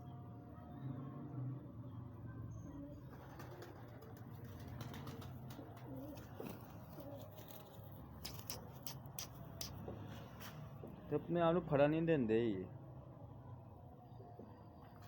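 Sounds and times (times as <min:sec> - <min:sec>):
pigeons cooing: 0:02.8 - 0:09.3.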